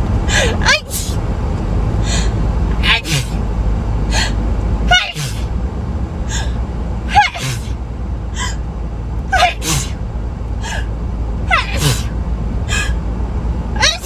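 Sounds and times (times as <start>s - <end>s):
steady low hum: 0.0s - 14.0s
woman sneezing: 0.3s - 1.2s, 2.8s - 3.4s, 4.2s - 5.5s, 7.1s - 7.8s, 9.4s - 10.0s, 11.5s - 12.1s
sharp intakes of breath: 2.0s - 2.4s.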